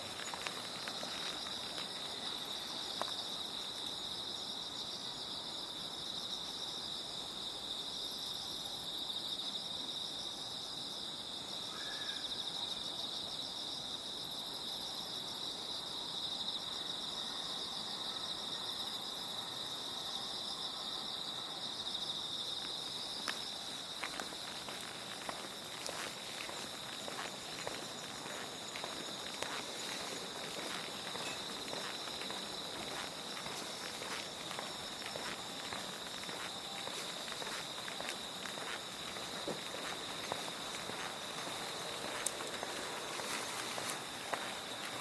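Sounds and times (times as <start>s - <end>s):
footsteps: 0.0s - 3.3s, 22.6s - 45.0s
crickets trilling: 0.0s - 45.0s
pulsing insect trill: 23.0s - 45.0s.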